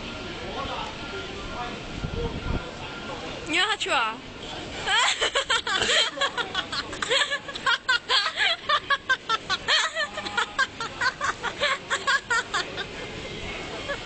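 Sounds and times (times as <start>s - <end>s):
people laughing: 4.9s - 14.0s
people talking: 4.9s - 14.0s.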